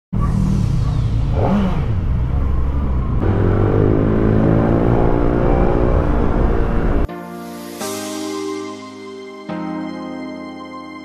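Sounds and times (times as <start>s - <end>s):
motorcycle engine revving: 0.2s - 7.1s.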